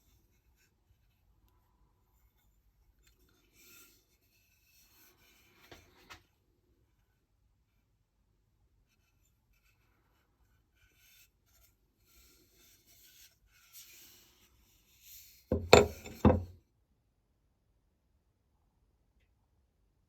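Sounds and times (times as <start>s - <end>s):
faint rubbing and scraping: 8.9s - 16.6s
loud knocks on workbench: 15.5s - 16.5s.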